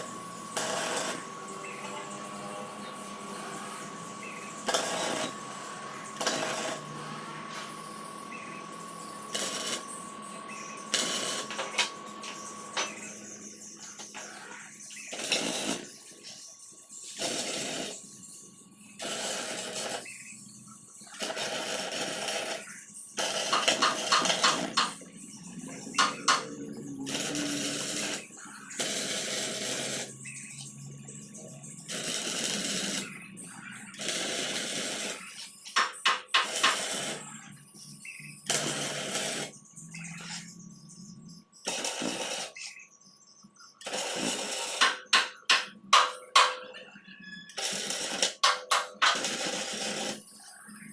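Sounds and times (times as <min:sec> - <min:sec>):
welder buzzing: 0:00.0 - 0:16.2, 0:17.0 - 0:18.1, 0:18.9 - 0:20.3, 0:21.1 - 0:31.0, 0:31.8 - 0:40.5, 0:41.6 - 0:42.6, 0:43.8 - 0:46.6, 0:47.5 - 0:50.2.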